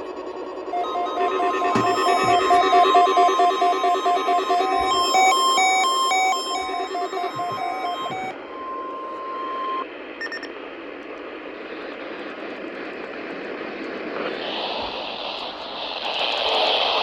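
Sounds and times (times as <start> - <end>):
brief beep: 0.0 - 10.5
steady single tone: 0.0 - 10.5.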